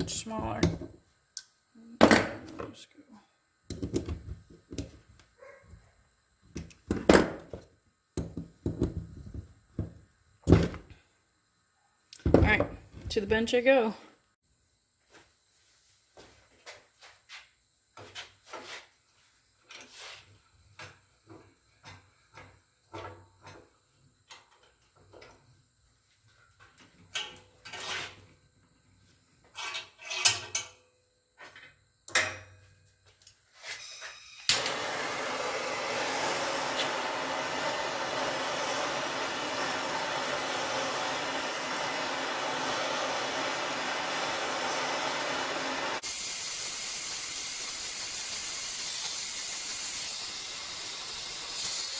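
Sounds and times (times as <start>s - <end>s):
torch lighting click: 34.5s - 34.8s
torch hissing: 34.5s - 51.9s.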